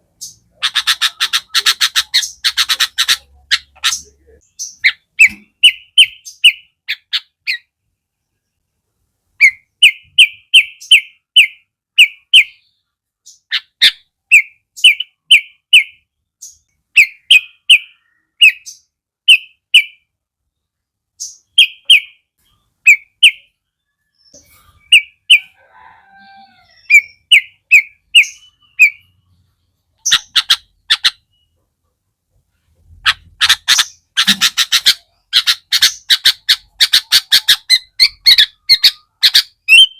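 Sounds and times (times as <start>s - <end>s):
harsh bird calls: 0.0s - 7.7s, 9.4s - 20.1s, 21.2s - 31.7s, 32.8s - 39.9s
bird chirping song: 0.0s - 39.9s.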